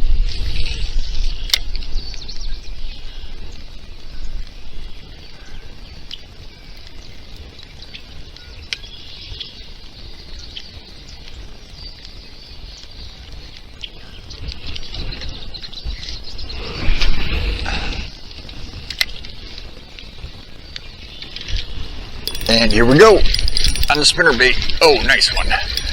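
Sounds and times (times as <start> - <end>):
birds chirping: 22.3 - 25.9.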